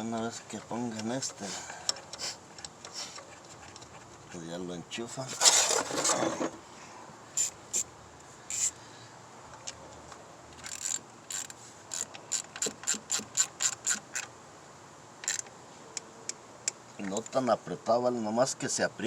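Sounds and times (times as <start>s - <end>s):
hand ratchet clicking: 8.5s - 8.7s, 10.6s - 14.3s, 15.2s - 15.5s.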